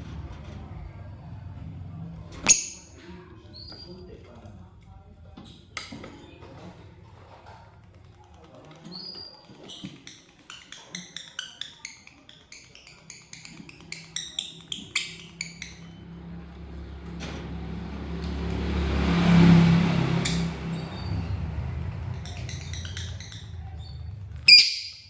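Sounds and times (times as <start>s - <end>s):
lovebirds chirping: 2.4s - 3.0s, 9.0s - 25.0s.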